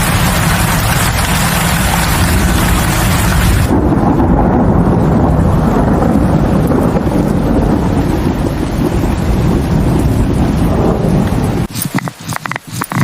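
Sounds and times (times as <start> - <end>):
deep steady rumble: 0.0 - 13.0
rain: 0.0 - 13.0.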